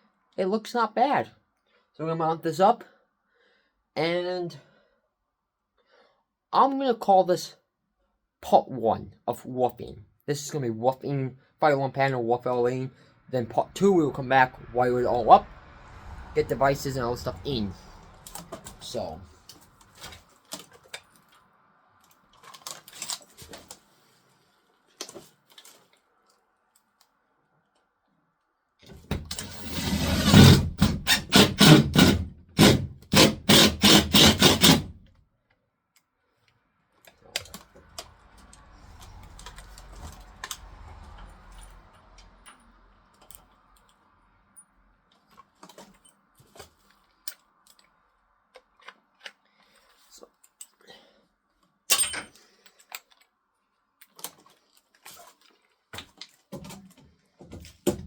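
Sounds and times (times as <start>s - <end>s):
tools clicking and rattling: 51.9s - 53.2s.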